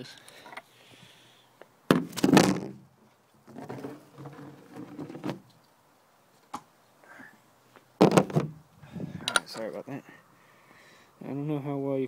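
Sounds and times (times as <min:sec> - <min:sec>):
phone scraping and rattling: 0:03.4 - 0:05.5.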